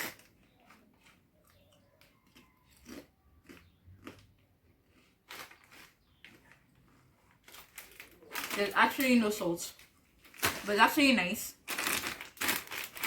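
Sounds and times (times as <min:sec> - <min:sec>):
person chewing crisps: 0:00.0 - 0:08.6, 0:11.6 - 0:13.0.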